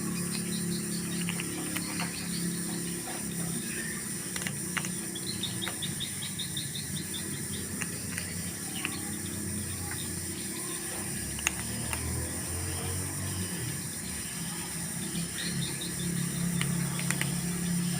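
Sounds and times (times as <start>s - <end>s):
low hum: 0.0s - 17.9s
rapid high chirps: 0.0s - 17.9s
faint clicks: 7.4s - 12.3s, 16.4s - 17.6s.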